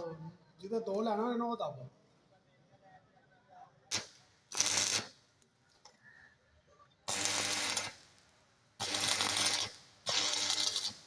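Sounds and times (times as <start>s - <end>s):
power tool whirring: 8.8s - 11.0s.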